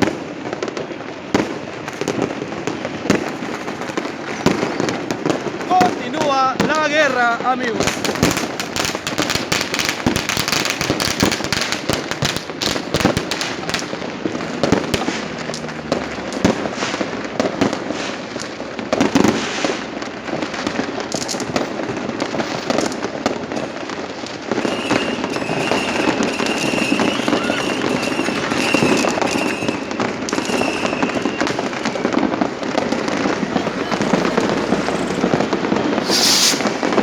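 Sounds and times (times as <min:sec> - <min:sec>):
fireworks crackling and banging: 0:00.0 - 0:37.0
high whistle: 0:24.6 - 0:32.2, 0:33.5 - 0:37.0.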